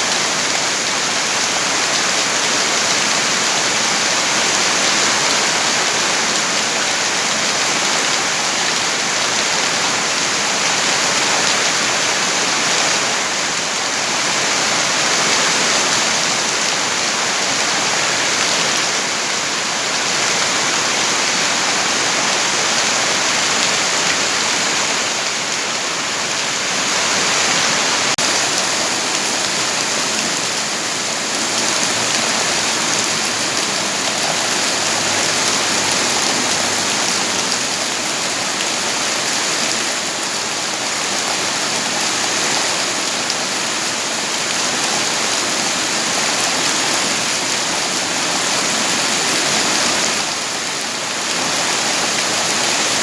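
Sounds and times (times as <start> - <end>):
heavy rain hissing: 20.4 - 42.4.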